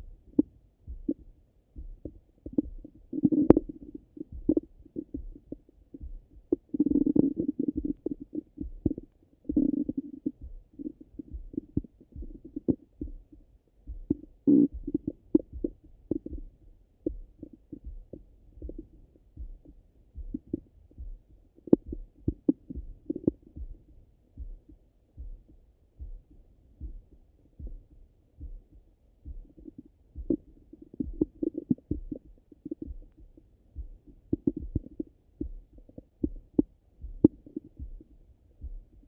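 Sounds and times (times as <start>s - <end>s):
low thud of pulse: 0.0s - 39.0s
stomach gurgles and bubbling pops: 1.9s - 13.2s, 14.0s - 16.4s, 21.6s - 23.7s, 29.4s - 33.2s, 33.9s - 38.1s.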